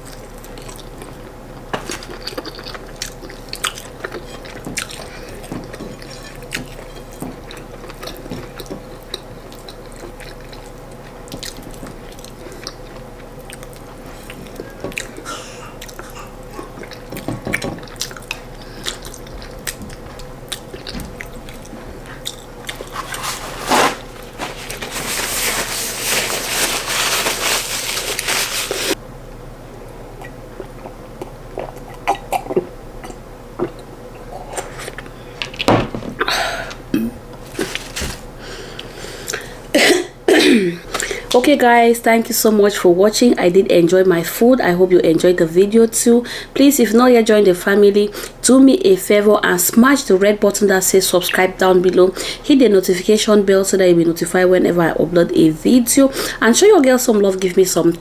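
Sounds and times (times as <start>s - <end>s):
chewing and crunching: 0.0s - 29.0s, 30.2s - 35.7s.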